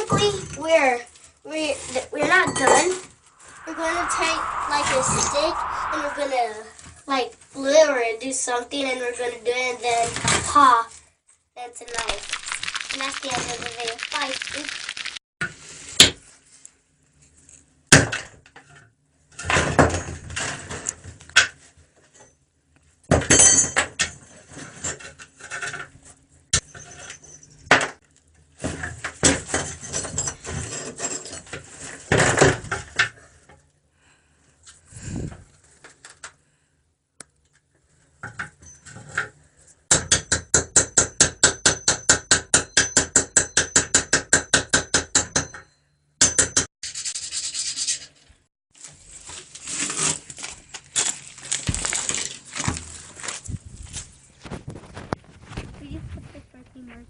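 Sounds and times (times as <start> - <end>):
small hard objects clattering: 11.8 - 15.2.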